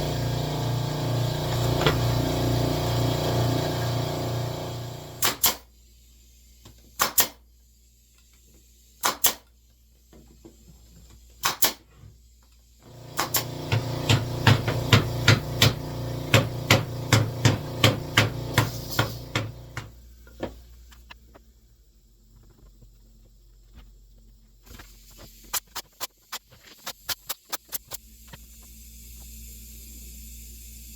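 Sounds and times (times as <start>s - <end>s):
machine hum: 0.0s - 5.2s, 12.8s - 20.1s
tool knocking on wood: 1.5s - 2.2s, 13.1s - 20.5s.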